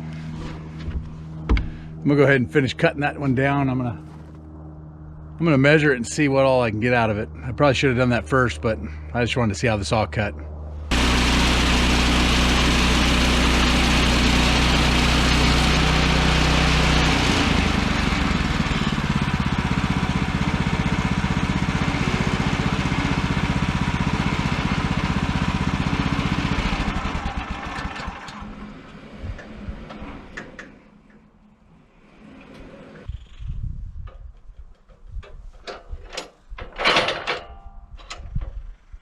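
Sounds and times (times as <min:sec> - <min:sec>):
sawmill engine under load: 0:10.9 - 0:33.1.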